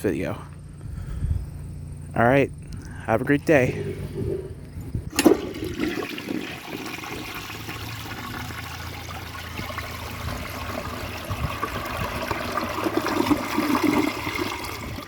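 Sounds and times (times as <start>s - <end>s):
toilet flushing water rush: 3.7s - 15.0s.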